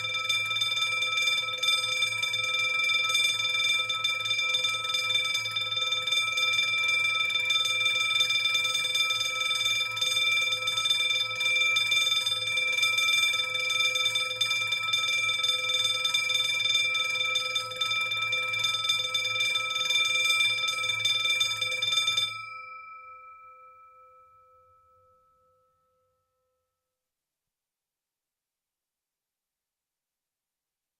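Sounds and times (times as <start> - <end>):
burglar alarm ringing: 0.0 - 23.5.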